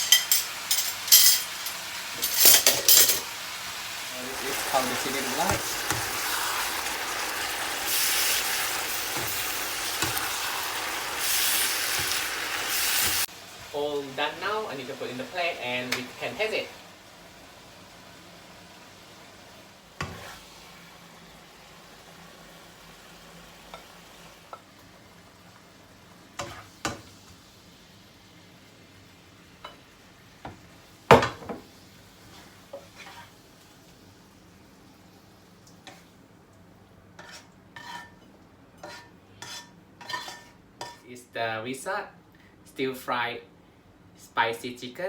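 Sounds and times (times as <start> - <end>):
hot oil sizzling: 0.0 - 36.4
metal spatula scraping frying pan: 20.0 - 20.4, 37.2 - 38.2, 38.8 - 41.0.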